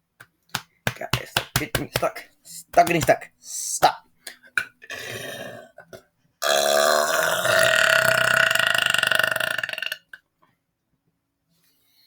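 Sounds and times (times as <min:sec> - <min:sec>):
man burping: 0:04.6 - 0:10.2.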